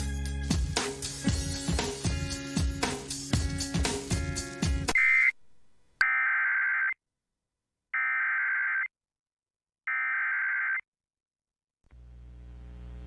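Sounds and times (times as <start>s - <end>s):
low buzzing hum: 11.9s - 13.0s.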